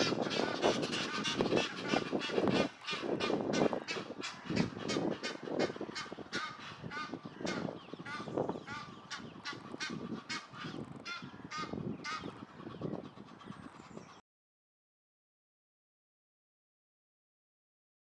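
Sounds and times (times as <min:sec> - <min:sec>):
geese honking: 0:00.0 - 0:14.2.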